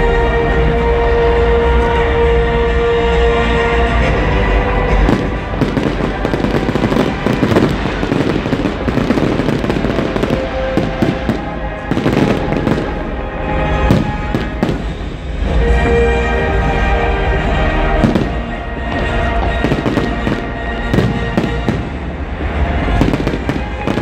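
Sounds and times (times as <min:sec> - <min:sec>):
music playing: 0:00.0 - 0:24.0
fireworks bangs and crackles: 0:04.1 - 0:16.0, 0:17.9 - 0:24.0.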